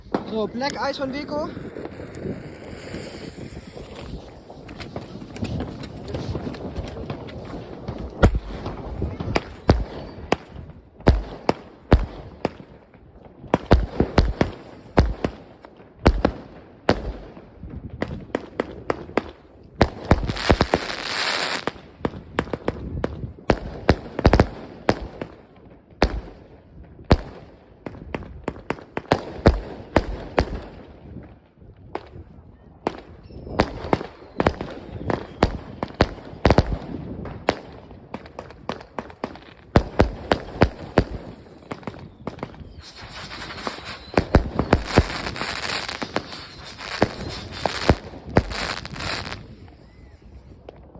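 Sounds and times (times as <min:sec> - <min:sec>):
firework hissing burst: 0:00.0 - 0:09.8, 0:40.0 - 0:50.3
firework bangs and cracks: 0:00.0 - 0:49.9.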